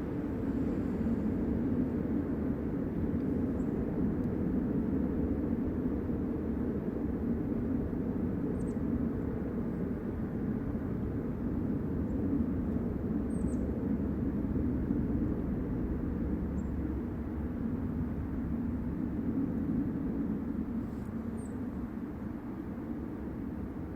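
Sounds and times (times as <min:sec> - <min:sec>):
low rumble in the sky: 0:00.0 - 0:23.9.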